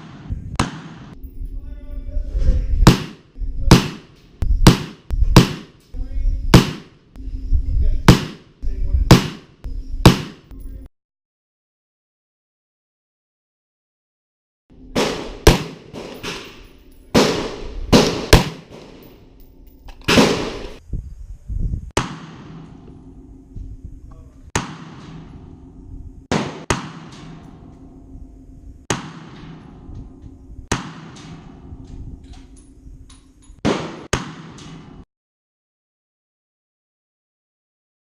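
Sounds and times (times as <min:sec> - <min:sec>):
rifle gunshots echoing: 0:02.8 - 0:04.1, 0:04.7 - 0:05.8, 0:06.6 - 0:07.0, 0:08.1 - 0:08.5, 0:09.1 - 0:09.5, 0:15.0 - 0:19.1, 0:20.0 - 0:20.8, 0:26.3 - 0:27.7, 0:30.7 - 0:31.8, 0:33.6 - 0:34.8.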